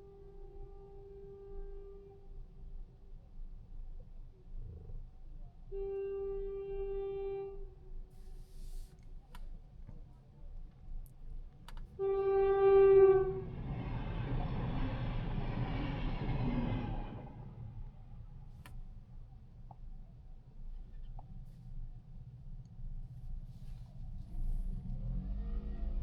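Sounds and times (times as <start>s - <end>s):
low road rumble: 3.9s - 26.0s
horn note: 12.0s - 14.4s
vehicle passing: 24.7s - 26.0s.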